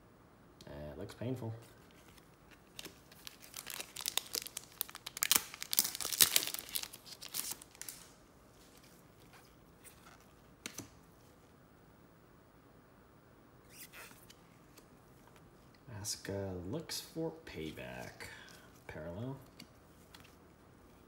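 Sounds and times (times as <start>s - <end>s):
wrapper tearing and crinkling: 2.6s - 8.9s.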